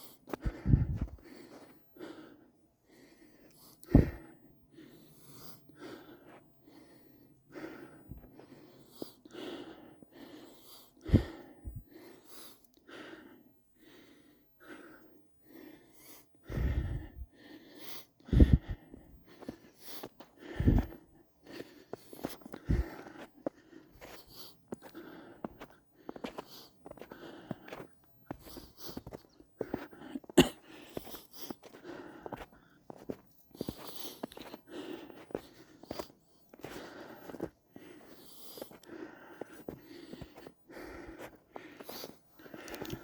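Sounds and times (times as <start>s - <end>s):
footsteps crunching through snow: 30.8s - 40.5s.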